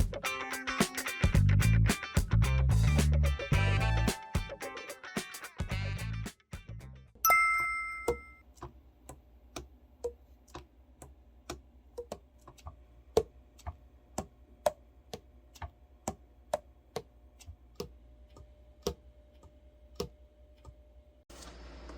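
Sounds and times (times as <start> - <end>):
bright metallic ring: 7.2 - 8.4.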